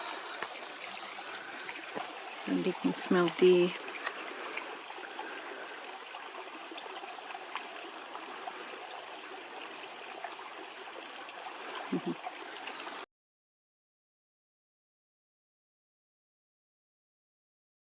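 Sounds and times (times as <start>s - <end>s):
stream water rushing: 0.0s - 13.0s.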